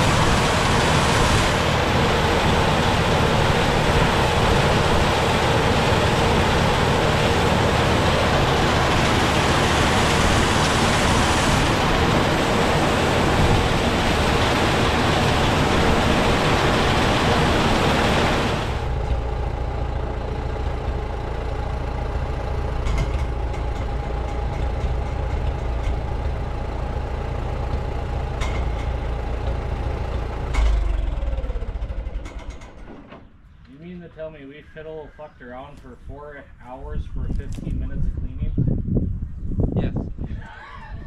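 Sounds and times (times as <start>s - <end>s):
machinery rushing and humming: 0.0s - 32.8s.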